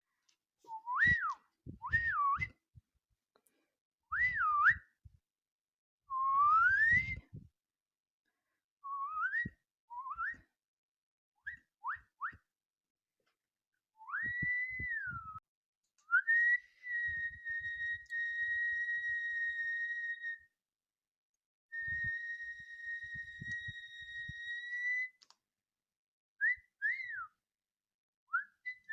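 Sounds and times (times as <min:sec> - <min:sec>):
girl whistling: 0:00.7 - 0:02.6, 0:04.1 - 0:05.0, 0:06.1 - 0:07.5, 0:08.8 - 0:10.6, 0:14.0 - 0:15.5, 0:16.1 - 0:20.6, 0:21.7 - 0:25.3, 0:26.4 - 0:27.4, 0:28.3 - 0:28.9.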